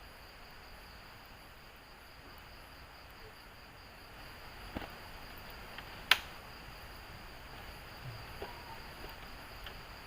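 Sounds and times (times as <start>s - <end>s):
insects chirring: 0.0s - 10.0s
faint ticks: 7.5s - 10.0s.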